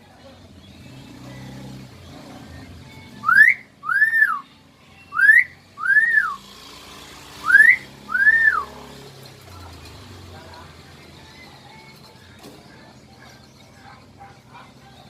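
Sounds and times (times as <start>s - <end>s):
bird wolf whistle: 3.2s - 4.5s, 5.1s - 6.4s, 7.4s - 8.7s.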